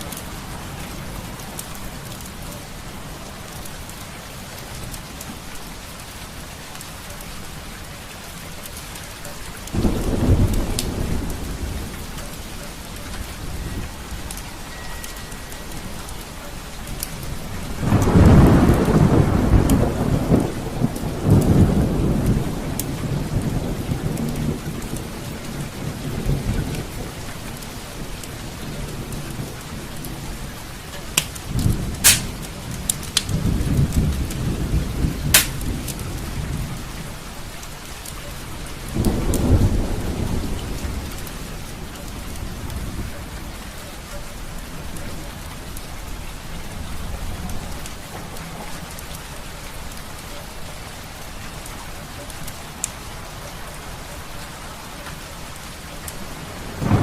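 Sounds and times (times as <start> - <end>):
steady rain: 0.0 - 57.0
rolling thunder: 9.7 - 14.4, 17.4 - 27.2, 38.8 - 43.6, 56.3 - 57.0
fireplace crackling pops: 31.1 - 31.4, 32.0 - 33.3, 35.3 - 35.6.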